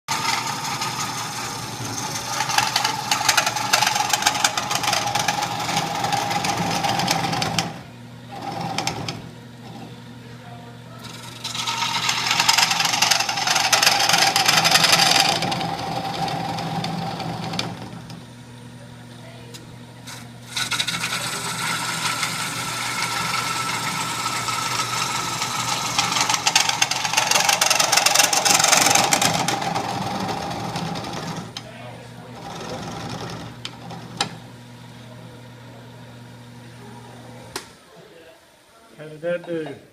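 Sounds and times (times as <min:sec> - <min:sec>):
turning tool scraping wood: 0:00.1 - 0:09.8, 0:11.0 - 0:18.2, 0:20.0 - 0:31.6, 0:32.3 - 0:34.3
lathe humming: 0:00.1 - 0:37.7.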